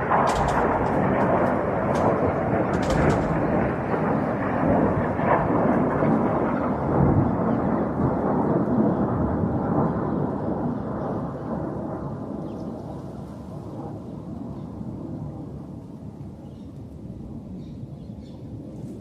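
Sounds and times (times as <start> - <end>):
rumble of distant explosions: 0.0 - 11.3.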